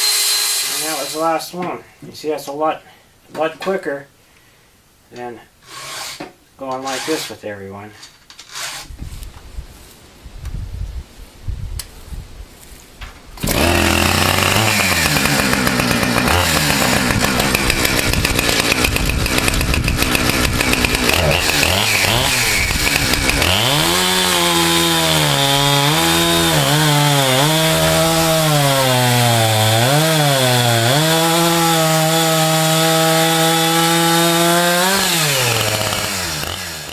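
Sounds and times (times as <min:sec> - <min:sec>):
chainsaw engine running: 0:13.4 - 0:36.9.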